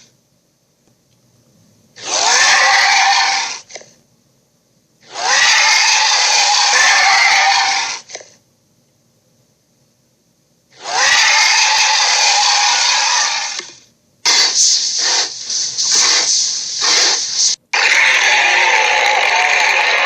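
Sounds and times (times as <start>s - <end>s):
harsh hissing dragon roar: 2.0s - 3.7s, 5.1s - 8.2s, 10.8s - 13.6s, 15.9s - 20.0s.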